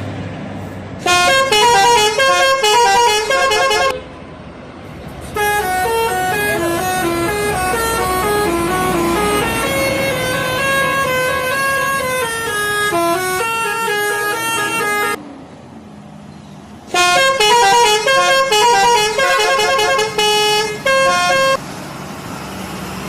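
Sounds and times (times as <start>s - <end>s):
musical air horn playing a tune: 1.0s - 4.0s, 5.3s - 15.2s, 16.9s - 21.6s.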